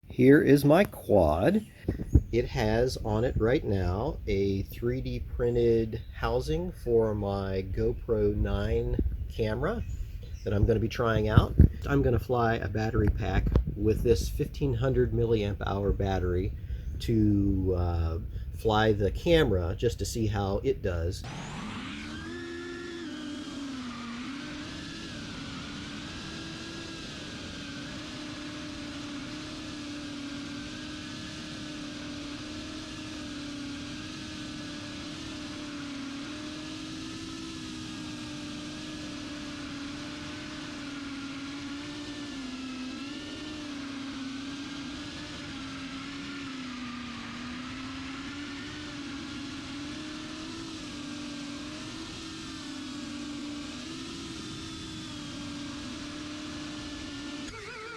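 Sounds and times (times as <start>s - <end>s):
quadcopter buzzing whine: 0.1s - 57.9s.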